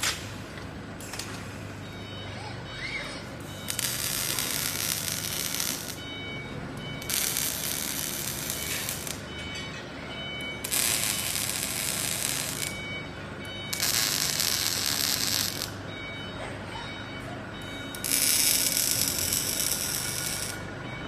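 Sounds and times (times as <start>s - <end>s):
faint machine whine: 0.3s - 21.0s
welding arc crackling: 3.7s - 6.0s, 7.0s - 9.3s, 10.6s - 12.8s, 13.7s - 15.8s, 17.9s - 20.6s.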